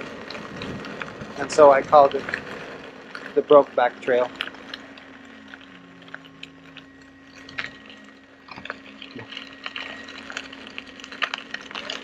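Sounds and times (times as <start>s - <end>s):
electric motor hum: 0.0s - 12.0s
small ticks and clicks: 0.0s - 12.0s.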